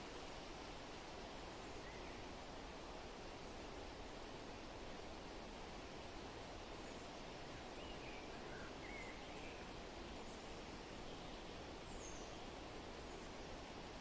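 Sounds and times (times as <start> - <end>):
steady wind: 0.0 - 14.0
faint bird chirps: 1.5 - 2.4, 6.6 - 13.5.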